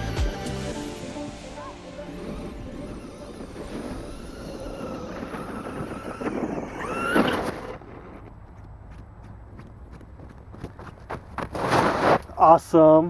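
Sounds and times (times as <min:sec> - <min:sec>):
toy truck electric motor whining: 0:00.0 - 0:08.3.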